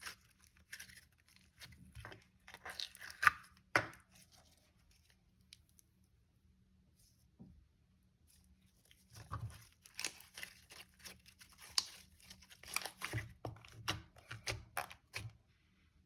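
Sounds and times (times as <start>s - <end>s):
slime crackling and popping: 9.9s - 13.1s.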